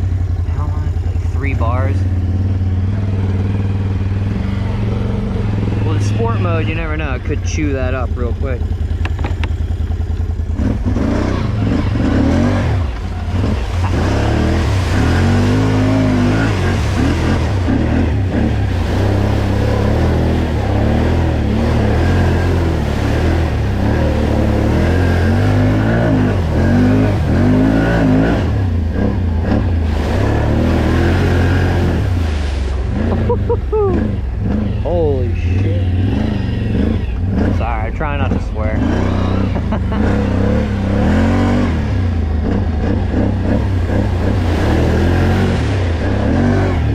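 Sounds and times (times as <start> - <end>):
tyres spinning and splashing in mud: 10.8 - 46.9.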